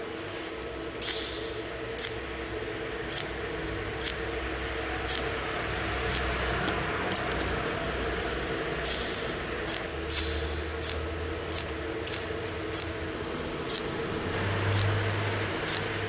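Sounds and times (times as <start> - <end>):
electrical hum: 0.0 - 16.0
welding pulses snapping: 3.1 - 4.3, 5.1 - 5.4, 6.0 - 7.5, 8.9 - 16.0.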